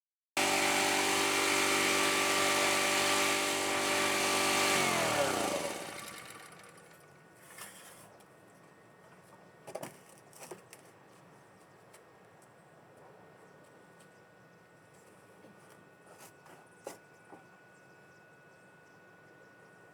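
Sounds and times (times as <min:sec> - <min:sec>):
generator engine running: 0:00.4 - 0:07.1.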